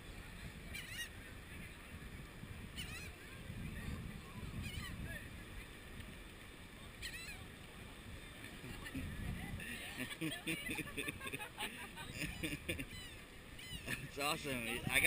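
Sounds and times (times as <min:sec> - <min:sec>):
seagull calling: 0:00.6 - 0:01.2, 0:02.7 - 0:03.3, 0:04.4 - 0:05.1, 0:07.0 - 0:07.5, 0:10.7 - 0:15.0.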